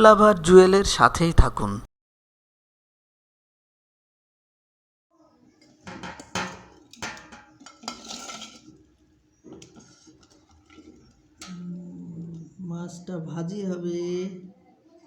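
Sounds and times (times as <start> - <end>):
utensils and dishes clinking: 5.5 - 12.5.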